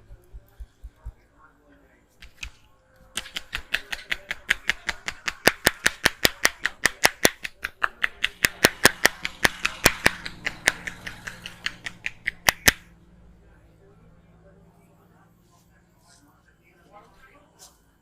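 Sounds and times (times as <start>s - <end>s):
hands striking head: 3.2s - 12.9s.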